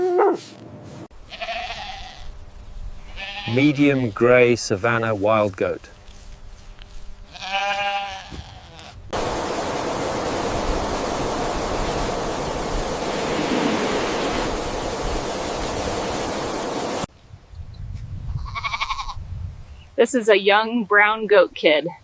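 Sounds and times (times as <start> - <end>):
goat bleating: 1.3 - 2.3, 3.0 - 3.8, 7.3 - 9.0, 18.4 - 19.2
loud steady hiss: 9.2 - 17.1.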